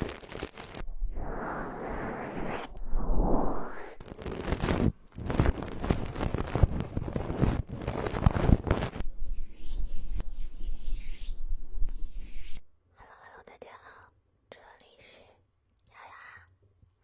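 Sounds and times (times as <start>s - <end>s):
scratchy rubbing on microphone: 0.0s - 0.8s, 4.0s - 12.7s
airy brushing sweep: 1.0s - 4.0s.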